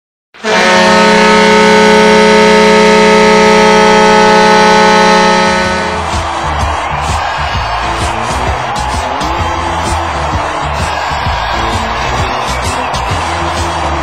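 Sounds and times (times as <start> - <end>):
hockey goal horn blast: 0.4 - 6.3
music: 3.8 - 14.0.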